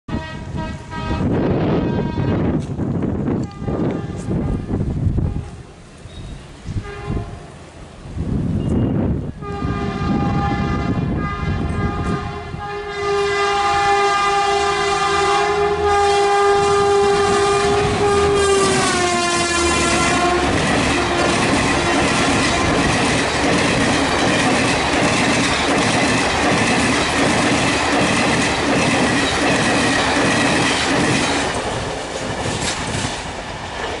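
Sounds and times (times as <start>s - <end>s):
train horn blast: 0.1s - 2.8s, 3.4s - 5.7s, 6.7s - 7.6s, 8.6s - 23.2s
train coaches rumbling and clattering: 0.4s - 12.6s, 14.7s - 34.0s.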